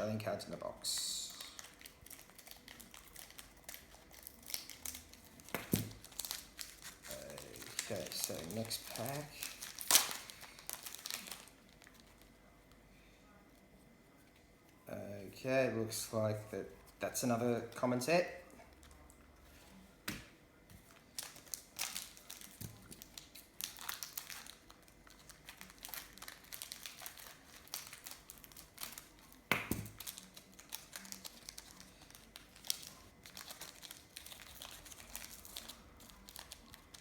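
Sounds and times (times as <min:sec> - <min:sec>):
wrapper crinkling: 0:00.7 - 0:12.3, 0:20.9 - 0:37.0.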